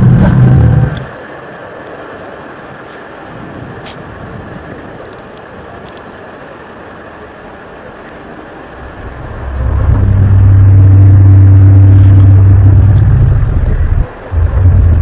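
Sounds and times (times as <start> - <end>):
deep droning hum: 0.0 - 1.3, 8.3 - 15.0.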